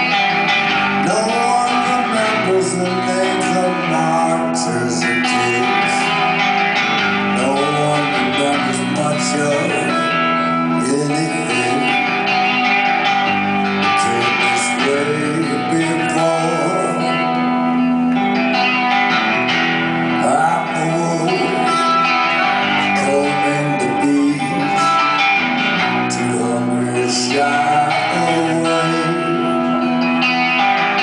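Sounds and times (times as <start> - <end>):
live rock band with guitars: 0.0 - 31.0.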